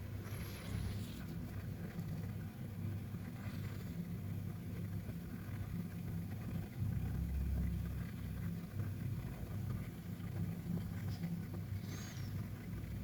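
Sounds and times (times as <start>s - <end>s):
cat snoring: 0.2s - 1.3s, 3.3s - 4.2s, 11.8s - 12.4s.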